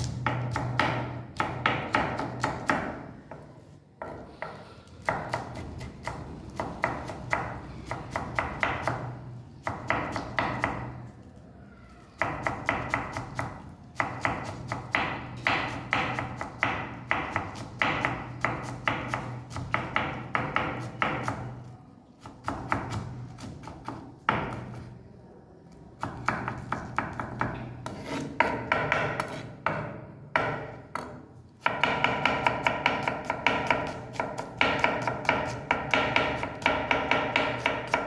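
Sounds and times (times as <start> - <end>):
knife chopping on cutting board: 26.0 - 38.0.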